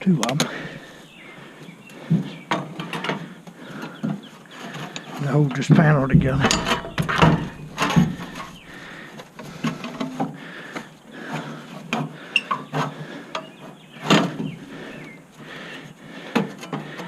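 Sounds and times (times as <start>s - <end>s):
sharp knocks: 6.0s - 8.8s
sheet-metal panels clanking: 6.0s - 8.9s.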